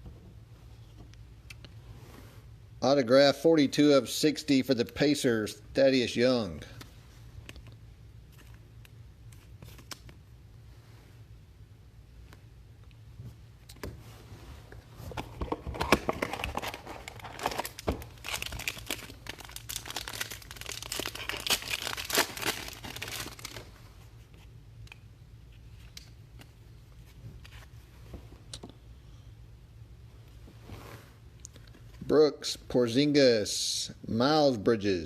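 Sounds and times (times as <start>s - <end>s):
cards being handled: 6.6s - 10.2s, 15.1s - 27.8s
foil wrapper tearing and crinkling: 15.9s - 23.7s.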